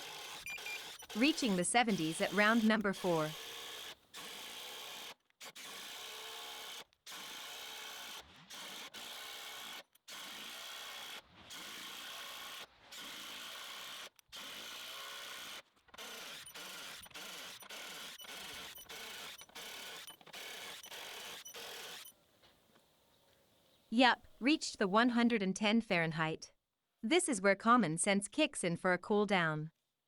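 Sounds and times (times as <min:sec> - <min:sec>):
impact driver hammering screws: 0:00.0 - 0:06.4, 0:14.4 - 0:22.1.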